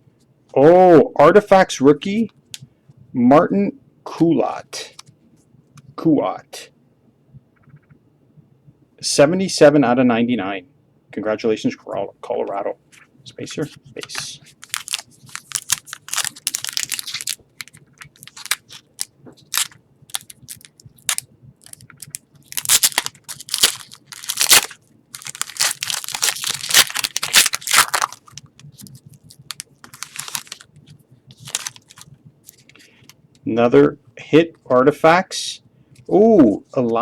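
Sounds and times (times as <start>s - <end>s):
cards being handled: 13.6s - 32.8s
foil wrappers crinkling and tearing: 14.5s - 30.7s, 31.4s - 32.6s.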